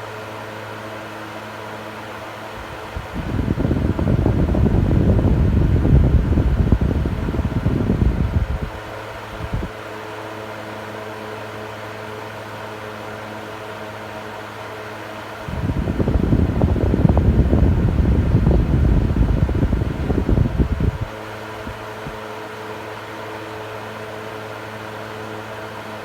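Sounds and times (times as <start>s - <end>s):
fan humming: 0.0s - 26.0s
low rush of moving air: 2.6s - 9.7s, 15.4s - 22.2s.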